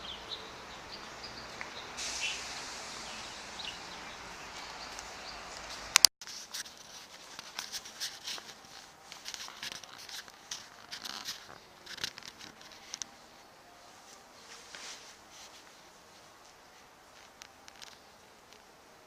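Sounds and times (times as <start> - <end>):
rustling and scratchy clicking: 4.6 - 18.8.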